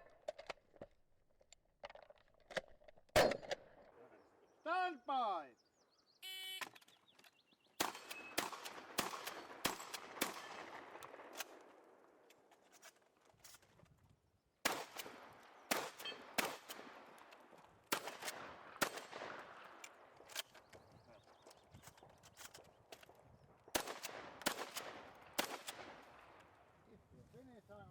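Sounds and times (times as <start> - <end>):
shotgun firing rapid shots: 7.8 - 11.7, 14.6 - 17.3, 17.9 - 19.8, 23.7 - 26.4.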